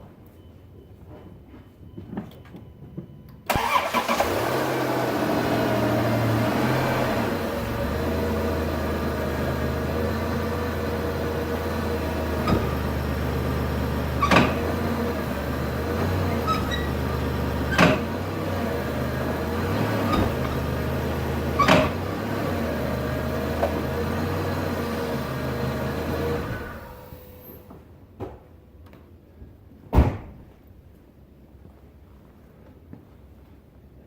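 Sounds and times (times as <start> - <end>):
car running with low hum: 4.2 - 27.5
sharp clunks from car front end: 12.2 - 13.2, 17.7 - 18.2, 19.8 - 20.8.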